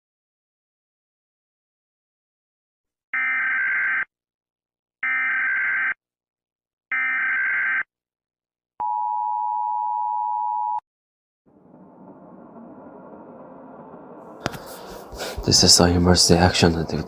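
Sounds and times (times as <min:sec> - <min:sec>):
low noise: 0:11.5 - 0:17.0.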